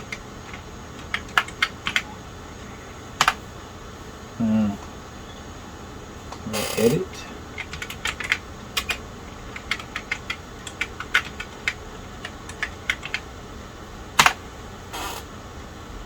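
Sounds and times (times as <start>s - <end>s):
keyboard typing clicks: 0.0s - 2.1s, 3.2s - 3.4s, 7.6s - 13.2s, 14.2s - 14.4s.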